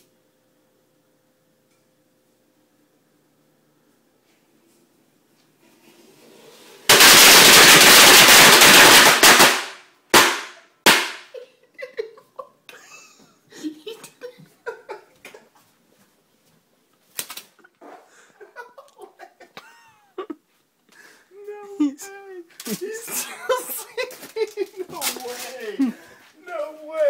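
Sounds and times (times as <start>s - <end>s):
firecrackers crackling: 6.8s - 11.3s, 22.6s - 26.1s
loud firecracker bangs: 6.9s - 11.3s.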